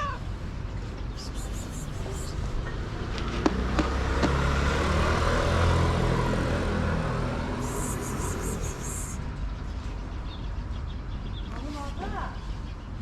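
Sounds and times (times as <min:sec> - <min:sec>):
high rapidly pulsing buzz: 0:01.2 - 0:02.4, 0:07.6 - 0:09.2
passing motor engine drone: 0:03.5 - 0:09.2.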